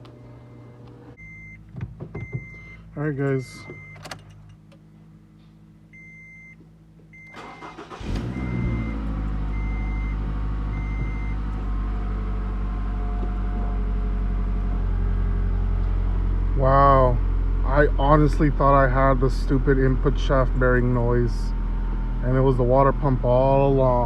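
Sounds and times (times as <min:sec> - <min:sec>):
car engine idling: 0:06.6 - 0:24.0
starter cranking engine: 0:07.4 - 0:11.9
dashboard chime beeps: 0:09.6 - 0:11.4.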